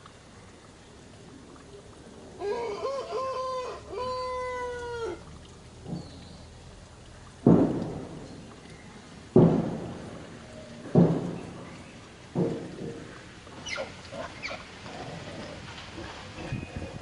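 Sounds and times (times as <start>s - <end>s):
loud thumps: 7.4s - 8.4s, 9.3s - 10.3s, 10.9s - 13.3s.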